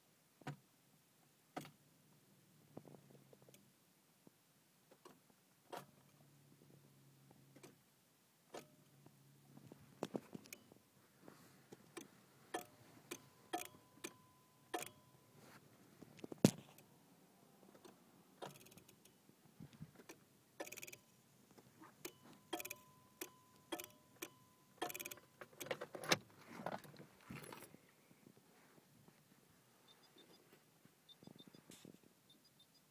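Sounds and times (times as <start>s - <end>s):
relay and key switch clicks: 11.9s - 15.0s, 22.0s - 26.2s.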